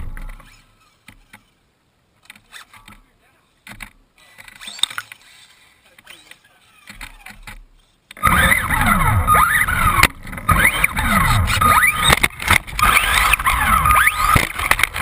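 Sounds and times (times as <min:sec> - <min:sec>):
rc car motor whine: 0:00.0 - 0:01.6, 0:04.6 - 0:07.3, 0:08.2 - 0:15.0
wheels and chassis rattling: 0:00.0 - 0:15.0.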